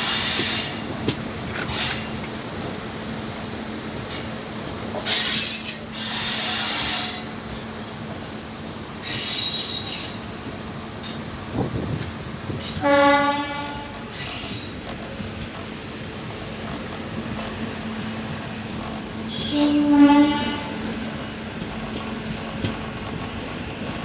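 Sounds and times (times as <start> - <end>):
train coach running noise: 0.0 - 24.0
locomotive horn blast: 12.8 - 14.1, 19.3 - 21.0
wheels squealing: 19.3 - 20.6.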